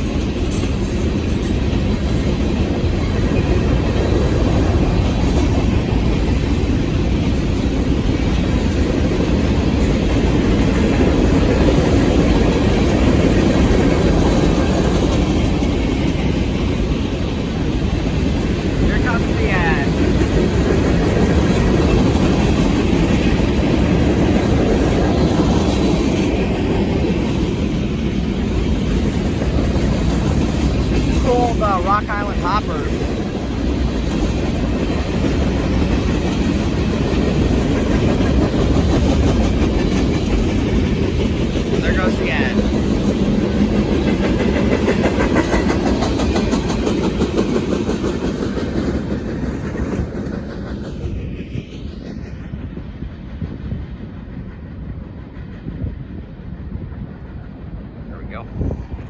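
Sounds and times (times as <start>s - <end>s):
train wheels rumbling on rails: 0.0s - 59.0s
wheels clacking over rail joints: 32.9s - 41.8s, 42.6s - 51.0s.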